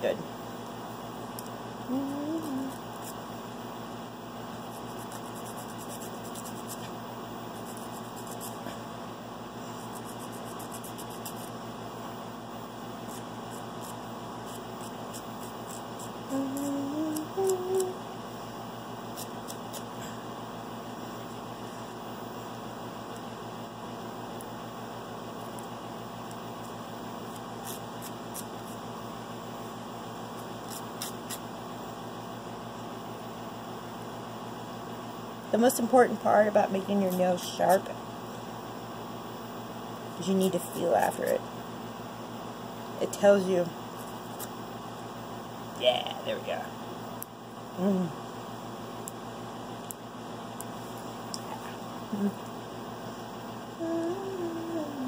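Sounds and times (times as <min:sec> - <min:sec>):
steady hum: 0:00.0 - 0:55.0
nail file scratching toenail: 0:02.0 - 0:03.2, 0:04.6 - 0:08.6, 0:09.7 - 0:11.6, 0:13.0 - 0:17.9, 0:19.1 - 0:19.9, 0:27.3 - 0:28.8, 0:30.4 - 0:31.4.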